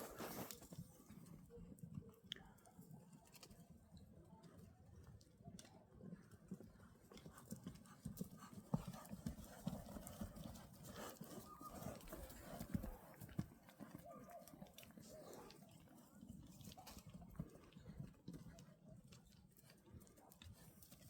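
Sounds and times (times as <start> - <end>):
livestock hooves trotting: 6.0 - 21.0.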